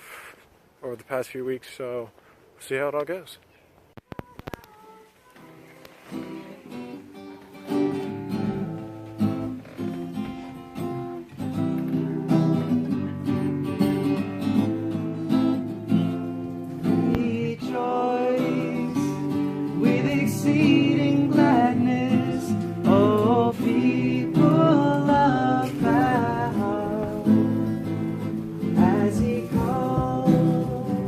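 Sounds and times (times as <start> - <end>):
person singing: 4.0 - 8.2, 16.8 - 31.0
acoustic guitar strumming: 4.0 - 31.0.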